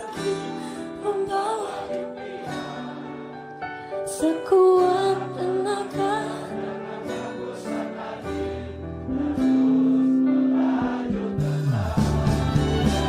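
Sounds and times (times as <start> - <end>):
woman singing pop song: 0.0 - 2.1, 4.0 - 6.5
backing band: 11.0 - 13.0.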